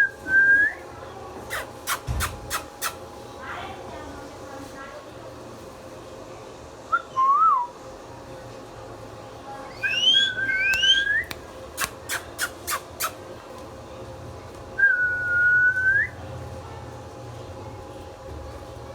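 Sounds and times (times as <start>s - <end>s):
parrot whistling: 9.7s - 13.2s
parrot sharp clicks: 10.6s - 13.2s.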